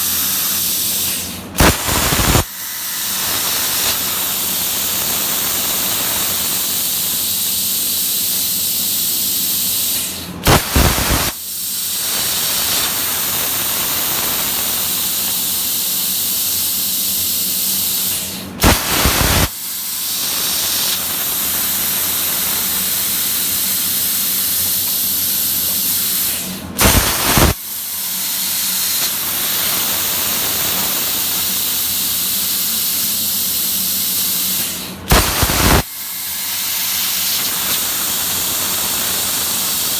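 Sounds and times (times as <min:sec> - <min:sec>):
plasma cutter hissing: 0:00.0 - 0:39.9.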